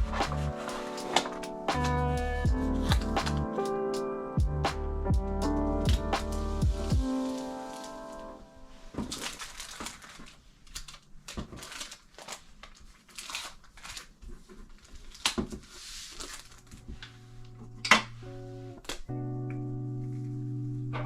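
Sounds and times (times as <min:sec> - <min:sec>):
packaging rustling: 0:00.2 - 0:01.6, 0:07.0 - 0:17.1.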